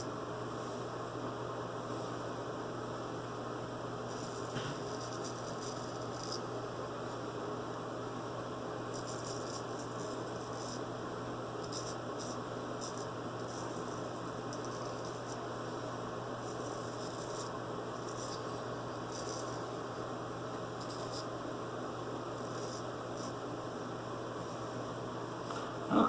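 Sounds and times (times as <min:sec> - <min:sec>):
electrical hum and hiss: 0:00.0 - 0:26.0
razor scraping stubble: 0:04.1 - 0:06.4, 0:16.5 - 0:19.8, 0:20.8 - 0:21.3, 0:22.4 - 0:23.4.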